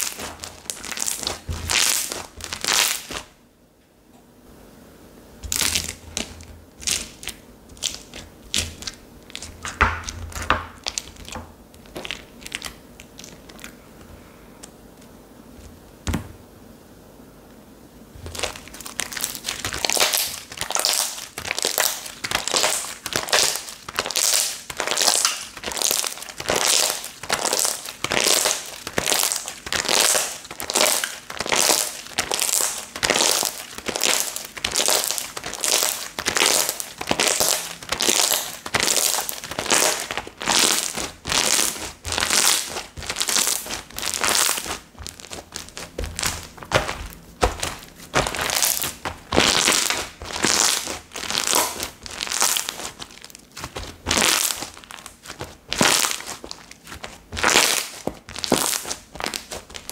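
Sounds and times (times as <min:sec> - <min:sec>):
slime crackling and popping: 0:00.0 - 0:03.4, 0:05.4 - 0:13.8, 0:18.2 - 0:59.9.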